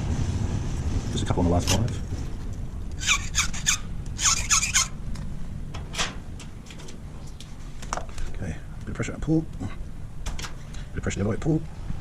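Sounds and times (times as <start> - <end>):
file scraping across key: 3.0 - 5.0.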